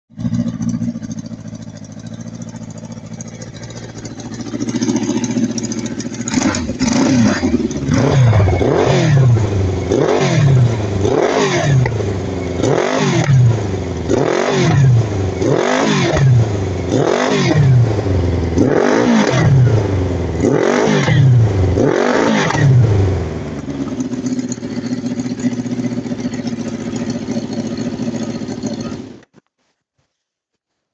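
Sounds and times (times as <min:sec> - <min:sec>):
engine revving and idling: 0:00.1 - 0:29.3.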